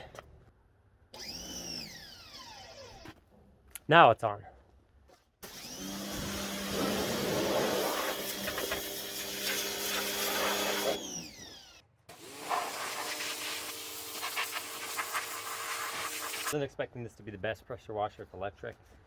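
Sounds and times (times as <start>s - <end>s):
water spray hiss: 12.5s - 16.6s.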